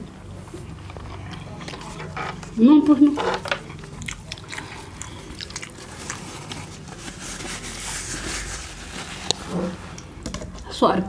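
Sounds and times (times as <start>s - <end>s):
wet smacking and chewing: 3.4s - 7.2s.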